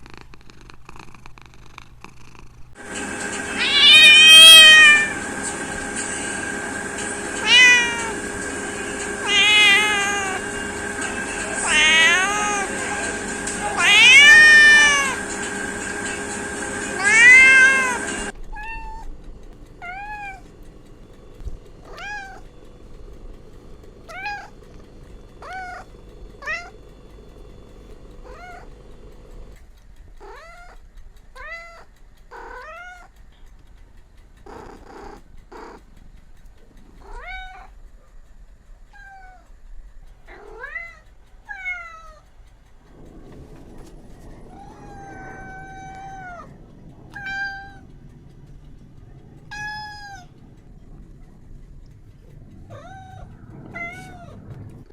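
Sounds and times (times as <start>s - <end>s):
cats meowing: 2.8s - 20.7s, 21.6s - 22.9s, 23.8s - 26.8s, 27.9s - 28.8s, 30.2s - 33.2s, 36.8s - 37.8s, 38.9s - 39.5s, 40.2s - 54.9s
kittens mewing high-pitched: 3.5s - 5.2s, 7.3s - 15.6s, 16.8s - 19.1s, 44.4s - 47.9s, 49.4s - 50.4s.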